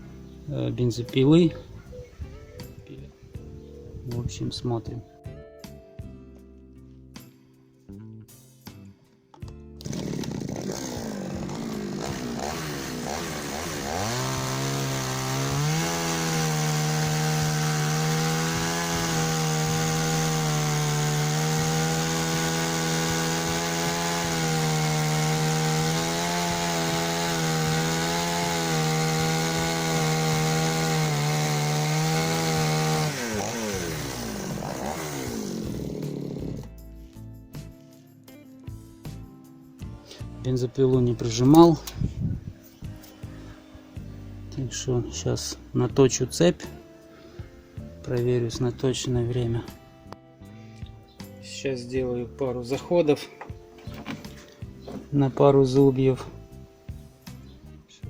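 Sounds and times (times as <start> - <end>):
chainsaw cutting log: 9.8 - 36.8.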